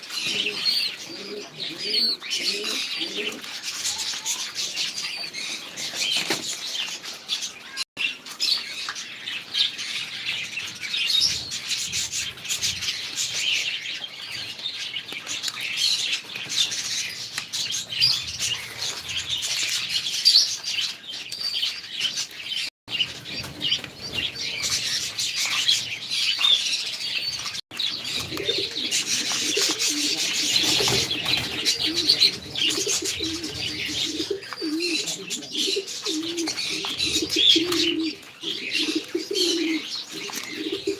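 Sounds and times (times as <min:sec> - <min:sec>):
birds chirping: 0:00.0 - 0:40.9
wings fluttering: 0:27.3 - 0:34.8.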